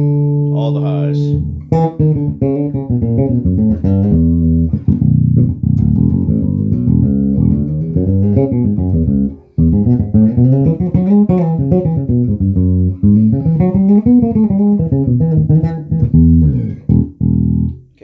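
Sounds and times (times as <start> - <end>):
electric bass played fingerstyle: 0.0 - 18.0.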